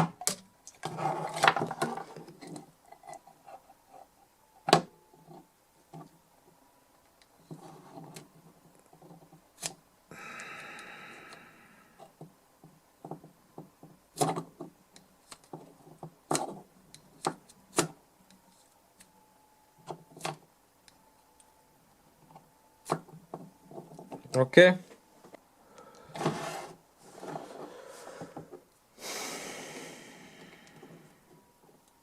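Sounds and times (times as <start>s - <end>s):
rasping scrape: 26.2s - 28.1s.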